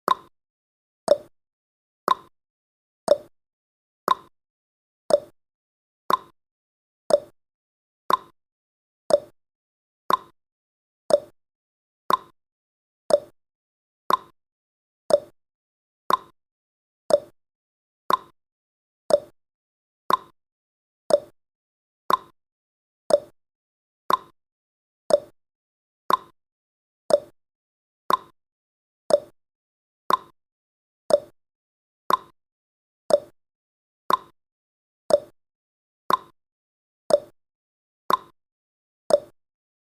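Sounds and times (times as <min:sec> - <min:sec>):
clock ticking: 0:00.1 - 0:00.3, 0:01.1 - 0:01.3, 0:02.1 - 0:02.3, 0:03.1 - 0:03.3, 0:04.1 - 0:04.3, 0:05.1 - 0:05.3, 0:06.1 - 0:06.3, 0:07.1 - 0:07.3, 0:08.1 - 0:08.3, 0:09.1 - 0:09.3, 0:10.1 - 0:10.3, 0:11.1 - 0:11.3, 0:12.1 - 0:12.3, 0:13.1 - 0:13.3, 0:14.1 - 0:14.3, 0:15.1 - 0:15.3, 0:16.1 - 0:16.3, 0:17.1 - 0:17.3, 0:18.1 - 0:18.3, 0:19.1 - 0:19.3, 0:20.1 - 0:20.3, 0:21.1 - 0:21.3, 0:22.1 - 0:22.3, 0:23.1 - 0:23.3, 0:24.1 - 0:24.3, 0:25.1 - 0:25.3, 0:26.1 - 0:26.3, 0:27.1 - 0:27.3, 0:28.1 - 0:28.3, 0:29.1 - 0:29.3, 0:30.1 - 0:30.3, 0:31.1 - 0:31.4, 0:32.1 - 0:32.3, 0:33.1 - 0:33.4, 0:34.1 - 0:34.3, 0:35.1 - 0:35.4, 0:36.1 - 0:36.4, 0:37.1 - 0:37.4, 0:38.1 - 0:38.4, 0:39.1 - 0:39.4.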